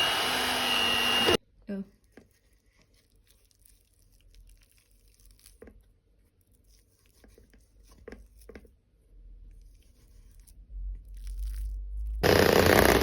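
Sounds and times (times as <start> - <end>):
crinkling: 2.0 - 8.7, 9.5 - 12.2.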